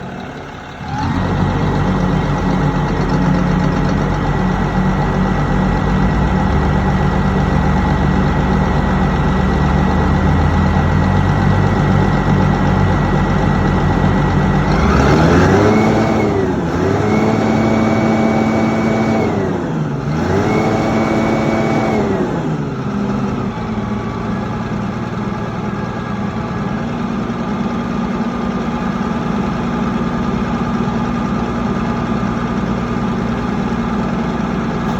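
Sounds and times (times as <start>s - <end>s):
misfiring diesel engine revving: 0.0s - 24.3s.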